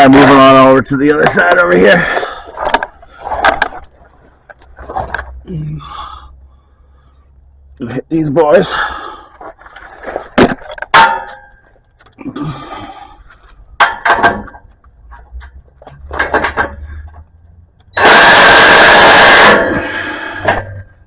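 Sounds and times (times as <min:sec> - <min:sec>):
impact wrench running: 0:17.9 - 0:20.0.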